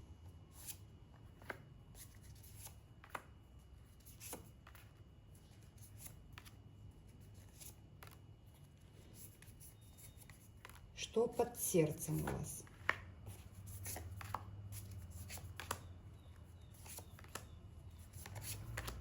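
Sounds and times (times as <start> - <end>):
cards shuffling and slapping: 0.6 - 3.4, 12.1 - 15.9, 16.7 - 19.0.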